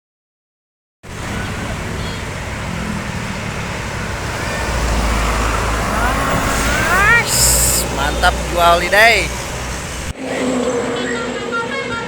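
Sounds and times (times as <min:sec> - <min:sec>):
heavy vehicle engine rumble: 0:01.0 - 0:10.2
road traffic noise: 0:01.0 - 0:12.0.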